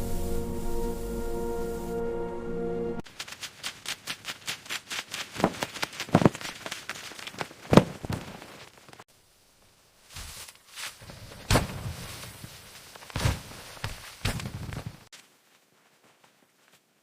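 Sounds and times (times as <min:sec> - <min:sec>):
music: 0:00.0 - 0:03.0.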